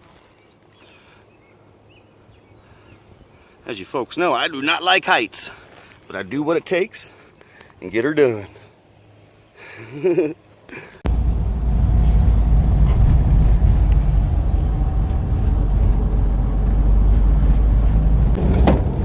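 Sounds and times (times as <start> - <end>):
road and engine rumble in vehicle: 10.2 - 19.0.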